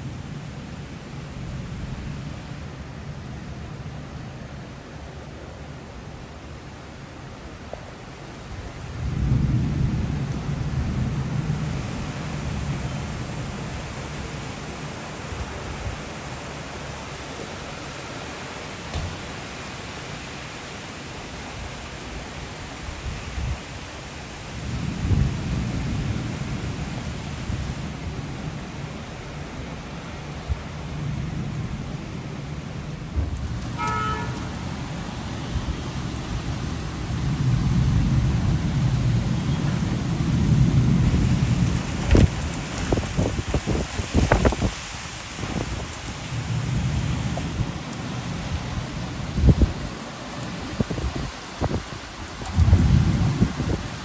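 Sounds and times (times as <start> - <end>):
heavy rain pouring: 0.0 - 54.0
wind: 0.0 - 54.0
thunder rumble: 8.2 - 54.0
vehicle horn toot: 33.6 - 34.8.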